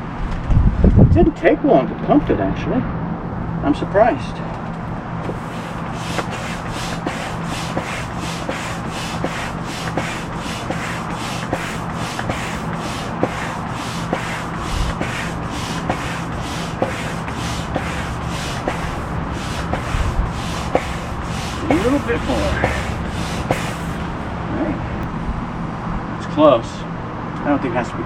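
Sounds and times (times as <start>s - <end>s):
air pump pulsing: 5.2s - 24.4s.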